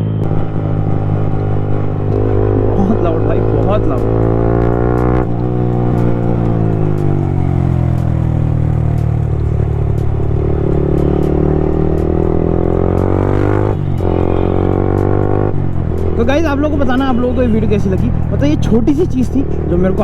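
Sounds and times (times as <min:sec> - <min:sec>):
motorcycle engine running: 0:00.0 - 0:20.0
exhaust pops and crackles: 0:01.7 - 0:04.0.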